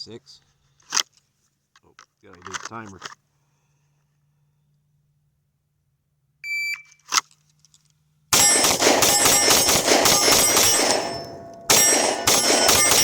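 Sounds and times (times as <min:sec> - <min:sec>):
shot timer beep: 0:06.4 - 0:07.0
rapid pistol shots: 0:08.4 - 0:13.0.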